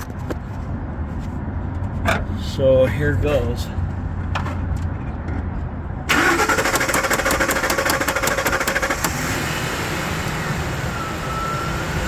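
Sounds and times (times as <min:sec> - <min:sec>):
engine running: 0:06.0 - 0:12.0
engine cranking on starter: 0:06.1 - 0:09.4.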